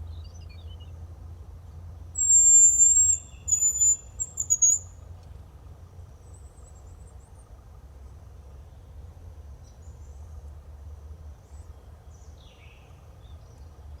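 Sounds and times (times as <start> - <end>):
high thin whistled bird notes: 2.2 - 4.9.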